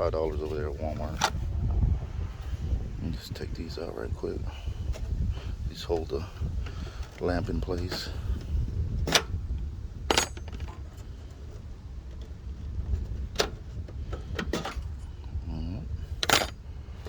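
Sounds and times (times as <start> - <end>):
low steady rumble: 0.0 - 17.0
clips clicking and knocking: 10.1 - 10.8, 16.2 - 16.6.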